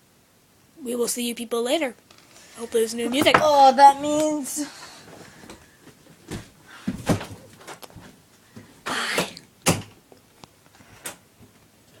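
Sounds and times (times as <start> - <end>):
person clearing throat: 8.9 - 9.4
person coughing: 8.9 - 9.4.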